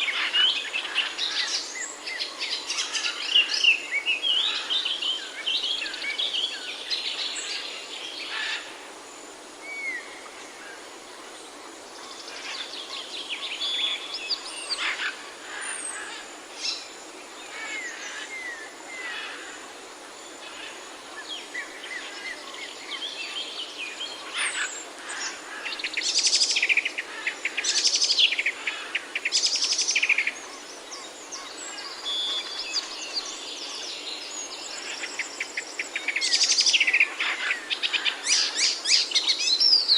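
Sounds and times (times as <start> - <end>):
steady background hiss: 0.0 - 39.9
songbirds chirping and singing: 11.0 - 39.9.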